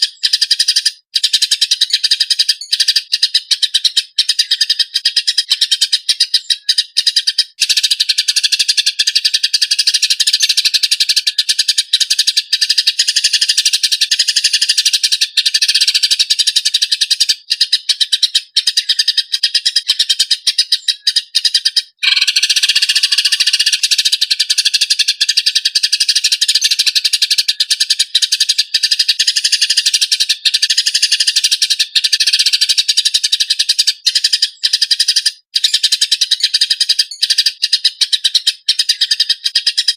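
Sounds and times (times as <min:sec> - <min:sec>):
sparrows chattering: 0:00.0 - 0:39.9.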